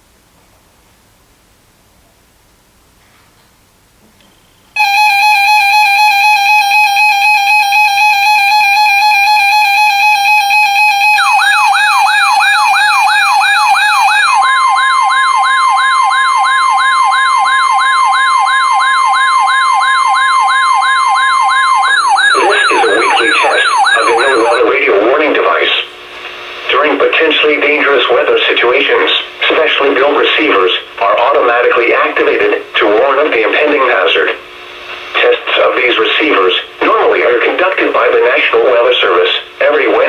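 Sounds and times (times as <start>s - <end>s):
steady pure tone: 4.2s - 40.0s
loud steady buzzy tone: 4.3s - 40.0s
fast warbling siren: 4.8s - 24.7s
faint radio static: 22.0s - 40.0s.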